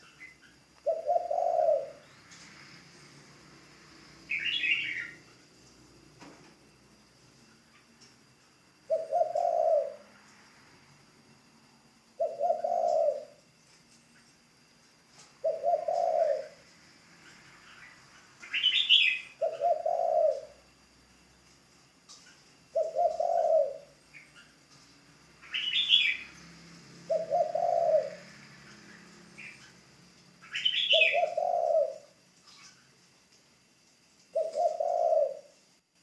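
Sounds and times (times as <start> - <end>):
dove cooing: 0.0 - 2.6, 4.2 - 5.4, 8.8 - 10.2, 12.1 - 13.4, 15.3 - 16.7, 17.5 - 20.7, 22.7 - 24.6, 25.4 - 32.8, 34.3 - 35.6.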